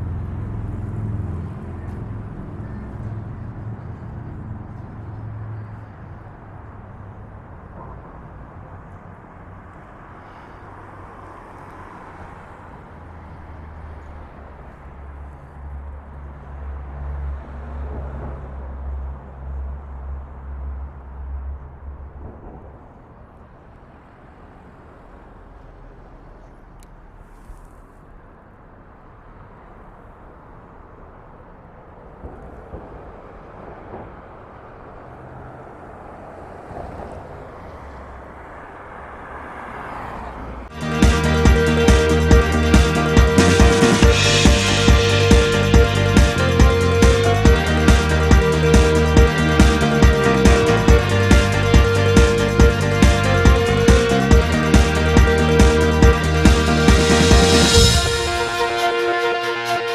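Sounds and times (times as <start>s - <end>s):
traffic noise: 0.0s - 59.9s
engine humming: 40.7s - 59.9s.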